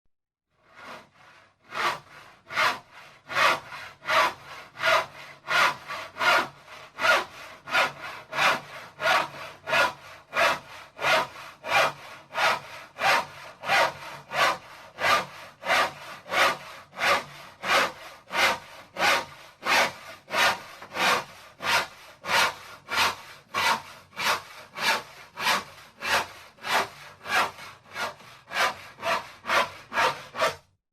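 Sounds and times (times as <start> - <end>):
hand saw cutting wood: 0.5 - 30.8.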